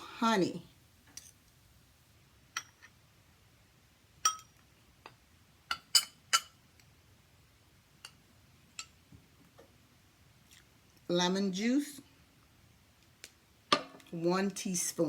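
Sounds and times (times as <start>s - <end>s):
spoon clinking against glass dish: 4.2s - 4.6s, 5.7s - 6.6s.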